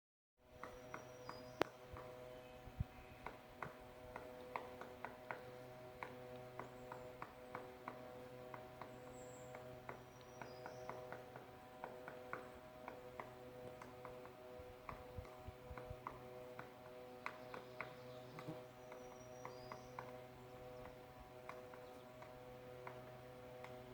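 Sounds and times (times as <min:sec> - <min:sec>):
woodpecker pecking at wood: 0:00.6 - 0:02.4, 0:03.2 - 0:23.9.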